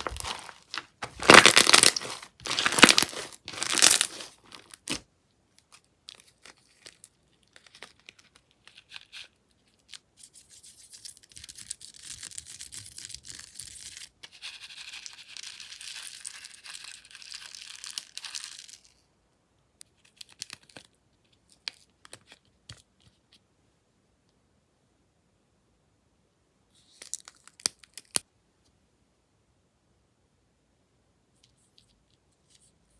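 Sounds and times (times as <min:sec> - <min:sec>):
slime clicking and crackling: 0:00.0 - 0:05.0.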